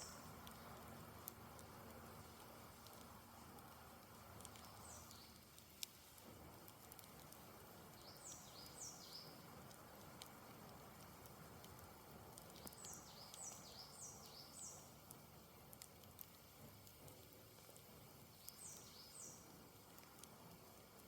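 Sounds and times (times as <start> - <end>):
bird singing whistled notes: 0.0 - 0.2, 8.0 - 9.4, 12.8 - 14.8, 18.4 - 19.4
campfire crackling: 0.0 - 21.0.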